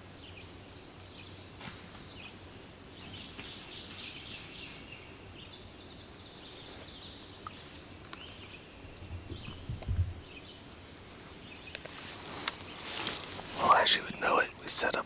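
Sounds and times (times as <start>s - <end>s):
songbirds singing: 0.0s - 15.0s
rustling: 10.8s - 14.0s.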